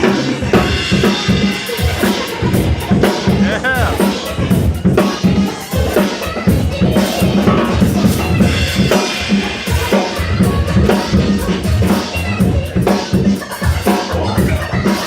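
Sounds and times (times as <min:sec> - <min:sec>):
drum-heavy beat: 0:00.0 - 0:15.0.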